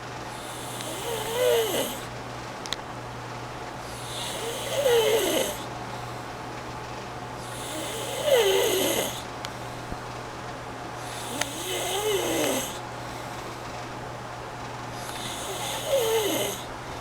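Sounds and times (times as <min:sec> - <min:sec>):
man snoring: 0:00.4 - 0:02.1, 0:03.8 - 0:05.7, 0:07.4 - 0:09.3, 0:11.0 - 0:12.8, 0:15.0 - 0:16.7.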